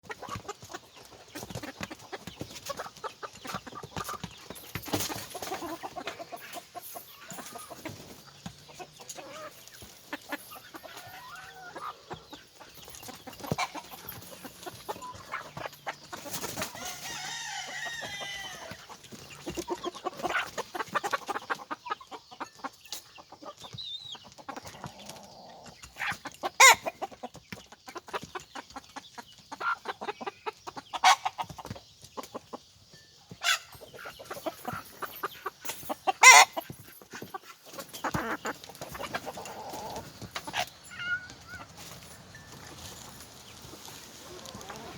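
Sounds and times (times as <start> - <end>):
chickens clucking: 0.0 - 44.9
rooster crowing: 16.8 - 18.8.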